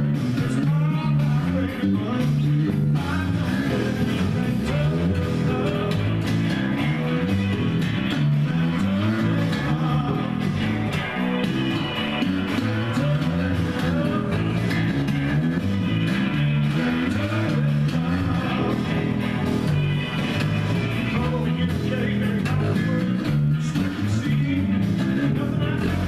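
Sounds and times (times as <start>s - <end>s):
rock song with singing: 0.0s - 26.0s.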